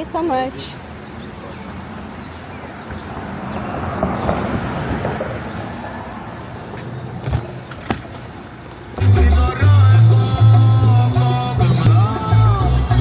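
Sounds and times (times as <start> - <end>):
vehicle engine and tyre noise: 0.0 - 9.0.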